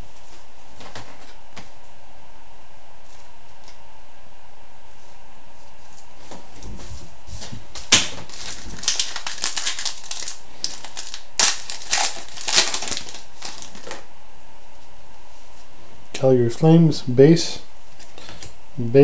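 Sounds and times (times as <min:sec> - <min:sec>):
cards rustling and clicking: 0:07.4 - 0:14.0
loud card snaps: 0:07.8 - 0:14.0.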